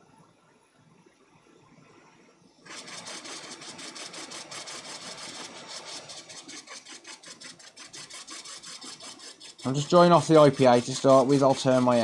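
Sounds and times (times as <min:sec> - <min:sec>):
hot air blower hissing and crackling: 0:02.6 - 0:12.0.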